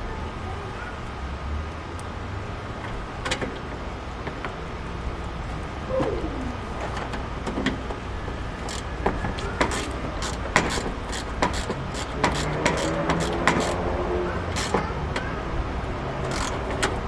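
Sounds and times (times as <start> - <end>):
dove cooing: 5.7 - 7.0.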